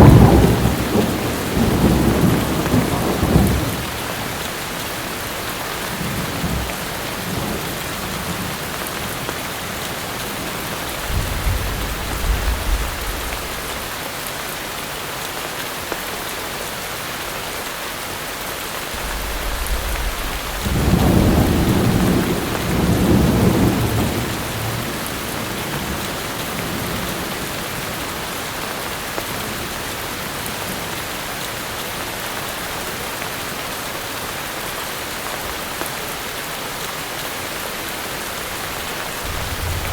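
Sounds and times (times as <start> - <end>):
thunder rumbling: 0.0 - 4.2, 10.2 - 13.9, 18.9 - 26.0, 38.5 - 39.9
heavy rain falling: 0.0 - 39.9.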